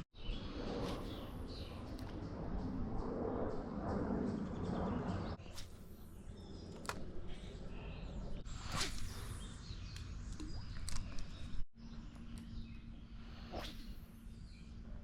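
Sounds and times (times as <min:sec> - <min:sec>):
small clicks: 0:09.9 - 0:12.5.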